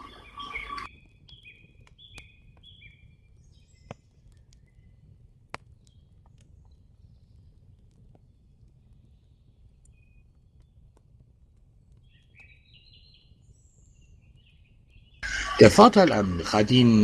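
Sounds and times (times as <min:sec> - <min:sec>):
bird chirping: 0:00.0 - 0:04.9, 0:12.0 - 0:17.0.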